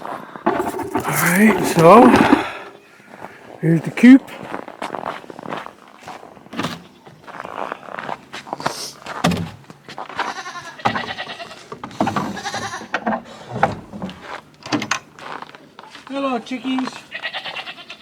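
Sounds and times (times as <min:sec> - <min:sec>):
goats bleating loudly: 0:00.5 - 0:04.2, 0:10.1 - 0:13.0, 0:16.8 - 0:18.0.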